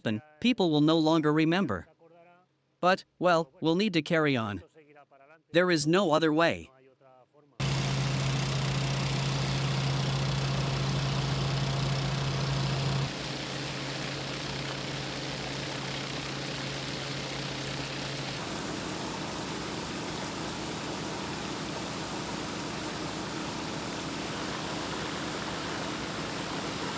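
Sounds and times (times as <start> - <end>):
engine humming: 7.6 - 15.9.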